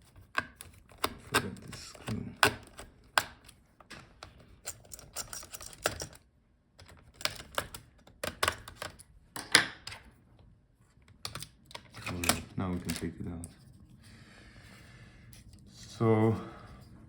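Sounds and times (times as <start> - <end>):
screwdriver and metal parts clicking: 4.2 - 6.2.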